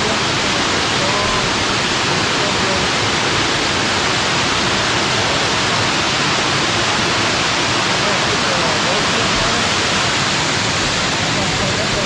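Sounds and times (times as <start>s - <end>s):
faint voices: 0.0s - 3.6s, 7.9s - 12.0s
waterfall roaring: 0.0s - 12.0s.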